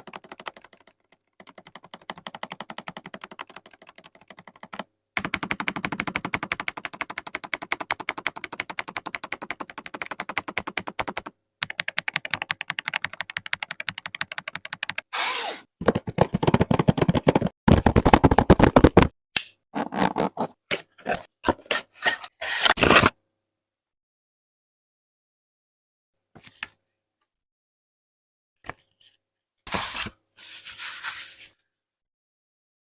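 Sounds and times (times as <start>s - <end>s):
fast typing on mechanical keyboard: 0.0s - 15.1s, 16.2s - 18.9s.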